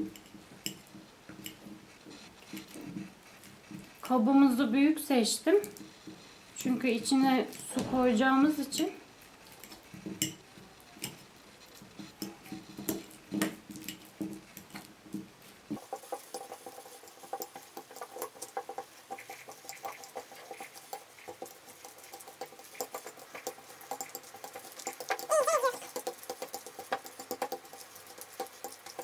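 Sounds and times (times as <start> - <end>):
fork tapping against bowl: 0.0 - 1.8, 9.6 - 11.2, 12.1 - 29.0.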